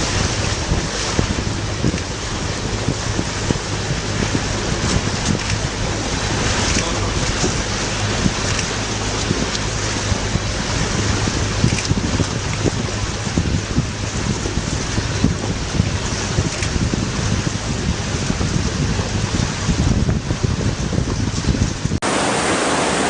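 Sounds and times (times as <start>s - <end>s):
water washing against rocks: 0.0s - 23.0s
small splashes and clicks: 4.8s - 5.7s, 6.4s - 9.7s, 11.6s - 12.8s, 16.4s - 16.8s.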